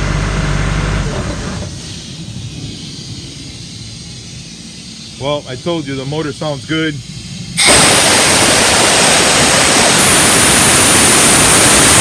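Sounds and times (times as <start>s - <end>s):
compressed air blasting from valve: 1.3s - 12.0s.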